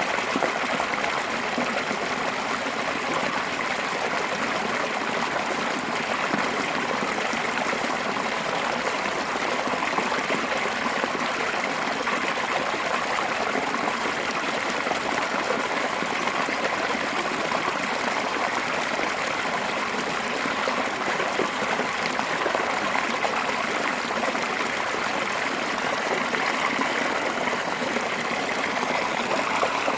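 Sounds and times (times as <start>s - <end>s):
water rushing over rocks: 17.8s - 29.9s.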